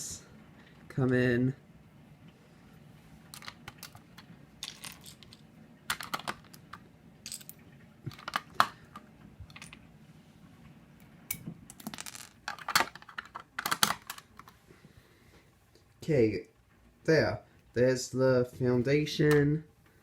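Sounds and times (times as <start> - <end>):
plastic bricks clicking: 3.4 - 6.8.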